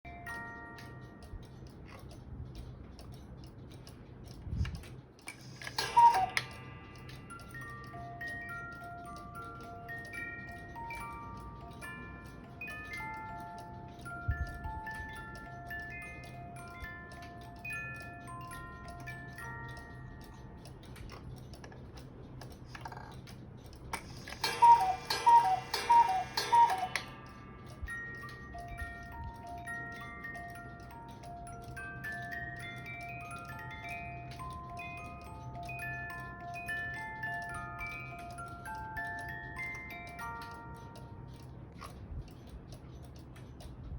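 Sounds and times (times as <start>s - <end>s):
clock ticking: 0.1s - 43.9s
cuckoo clock calls: 5.2s - 43.6s
chime-like tones: 5.5s - 20.4s, 24.0s - 41.3s
two-note cuckoo call: 5.8s - 6.6s, 24.4s - 27.2s.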